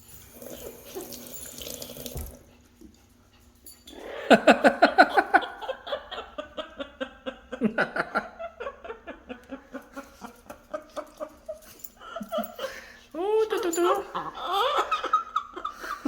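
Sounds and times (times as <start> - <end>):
parrot cackling laugh: 4.0 - 11.3, 14.1 - 16.0.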